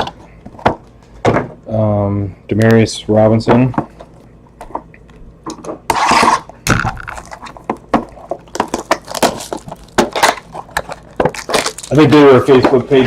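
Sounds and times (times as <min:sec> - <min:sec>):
plastic packaging crackling: 0:06.8 - 0:12.6
packaging rustle: 0:07.1 - 0:12.2.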